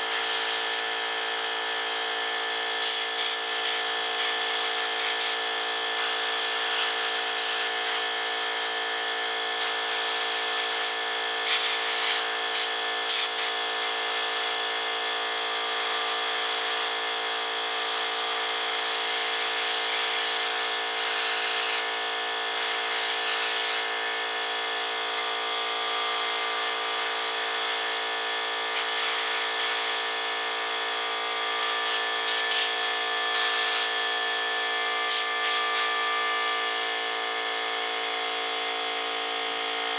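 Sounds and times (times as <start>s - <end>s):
air compressor humming: 0.0s - 38.2s
sandblaster hissing: 0.1s - 0.8s, 6.0s - 8.7s, 9.6s - 14.6s, 19.2s - 21.8s, 22.6s - 23.9s, 28.8s - 30.1s, 31.6s - 33.9s, 35.1s - 35.9s.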